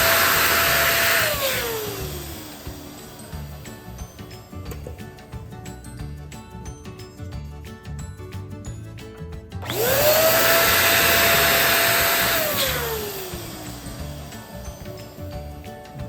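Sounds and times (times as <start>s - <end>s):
electric balloon pump whining: 0.0s - 5.2s, 9.6s - 16.0s
background music with beat: 0.0s - 16.0s.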